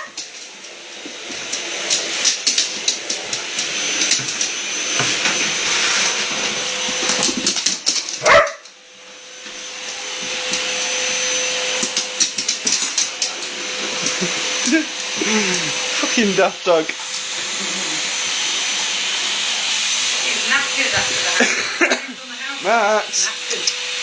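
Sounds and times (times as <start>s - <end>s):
vacuum cleaner running: 0.0s - 24.0s
dog barking: 8.2s - 8.7s.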